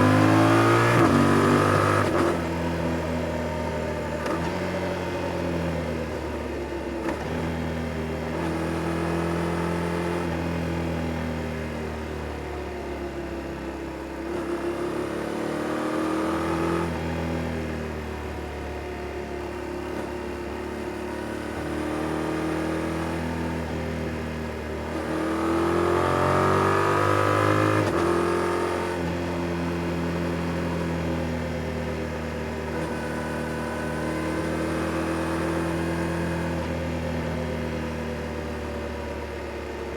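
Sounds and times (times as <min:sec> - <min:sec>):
motorcycle engine revving: 0:00.0 - 0:02.5.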